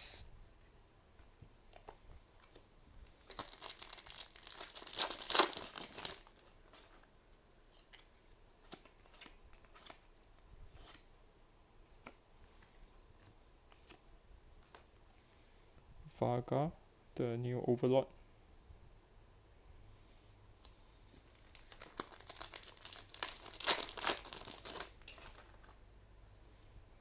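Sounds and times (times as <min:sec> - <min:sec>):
foil wrapper crinkling and tearing: 0:03.2 - 0:07.1, 0:21.3 - 0:25.8.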